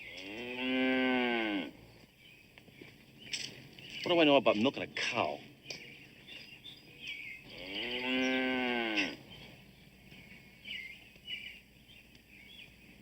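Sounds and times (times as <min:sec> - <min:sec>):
cow mooing: 0:00.0 - 0:01.8, 0:07.5 - 0:09.2.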